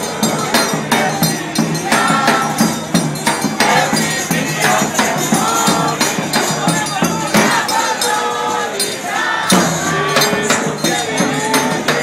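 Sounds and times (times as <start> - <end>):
crowd voices: 0.0 - 12.0
people singing: 0.0 - 12.0
percussion beat: 0.0 - 12.0.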